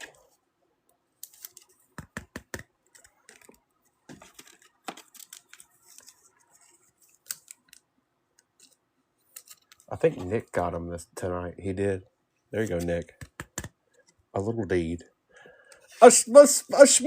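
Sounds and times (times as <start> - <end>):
cards and packaging handled: 1.1 - 10.5.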